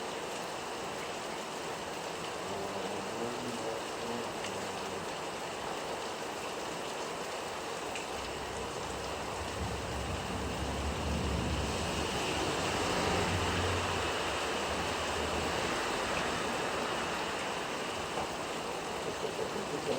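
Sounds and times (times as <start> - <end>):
steady rain falling: 0.0 - 19.9
low rumble: 8.2 - 12.7.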